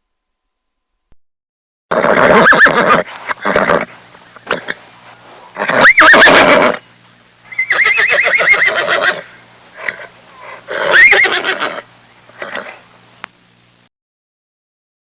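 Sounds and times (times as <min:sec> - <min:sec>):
horse whinnying: 0:01.9 - 0:04.8, 0:05.5 - 0:06.8, 0:07.5 - 0:12.8.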